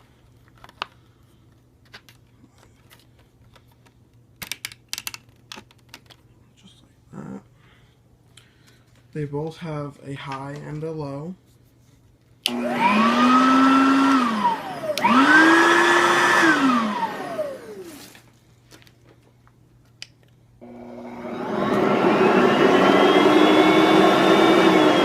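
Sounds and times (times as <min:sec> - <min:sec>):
vacuum motor running steadily: 0:12.5 - 0:18.0, 0:20.6 - 0:25.0
vacuum cleaner motor whining: 0:12.5 - 0:18.1, 0:20.6 - 0:25.0.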